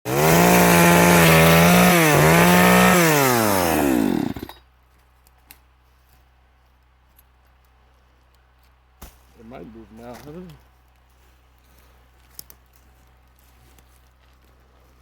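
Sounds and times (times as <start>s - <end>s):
chainsaw engine running: 0.1s - 4.6s.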